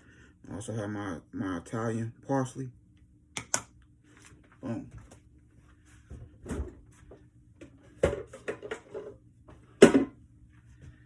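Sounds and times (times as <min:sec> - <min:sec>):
kitchen items clattering: 0:07.9 - 0:09.2.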